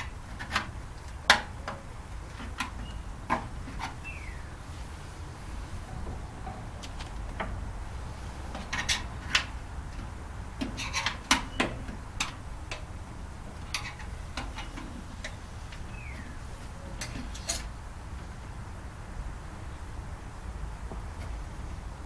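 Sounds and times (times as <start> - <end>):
metal parts and tools clinking: 10.6 - 12.8, 16.9 - 17.7.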